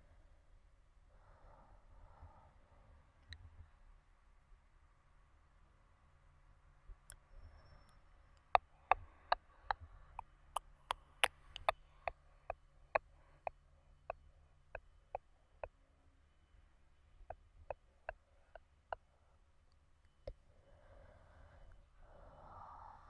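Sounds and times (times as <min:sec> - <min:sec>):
mouth clicks: 0:10.9 - 0:12.2.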